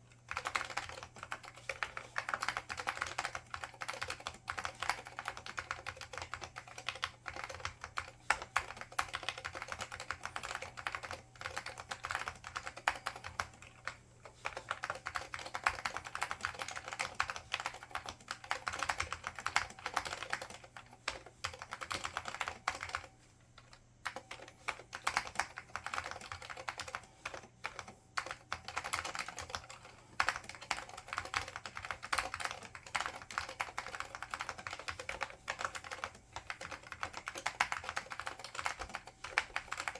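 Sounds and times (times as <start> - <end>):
faint steady hum: 0.0 - 39.9
clicky keyboard typing: 0.3 - 39.9.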